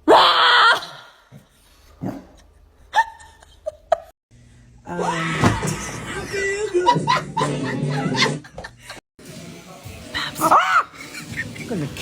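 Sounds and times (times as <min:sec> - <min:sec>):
people laughing: 0:05.6 - 0:09.0, 0:10.2 - 0:12.0.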